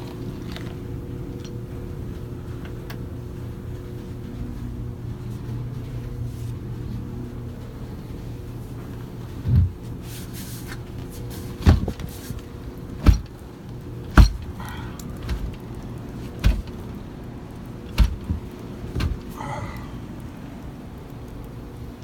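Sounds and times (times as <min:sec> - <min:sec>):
steady low hum: 0:00.0 - 0:22.0
door thudding against packed snow: 0:16.3 - 0:16.8, 0:17.9 - 0:19.3.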